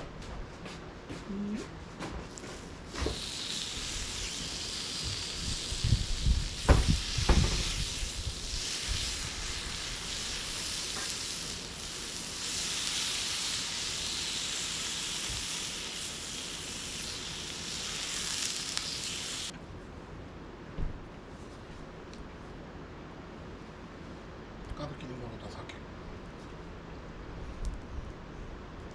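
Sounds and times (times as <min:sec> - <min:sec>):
food sizzling: 0:02.9 - 0:19.5.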